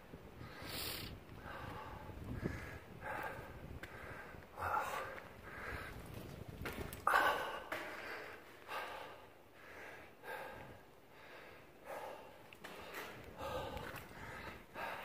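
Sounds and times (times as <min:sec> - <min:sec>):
person breathing hard: 0:00.4 - 0:06.0, 0:07.0 - 0:15.0.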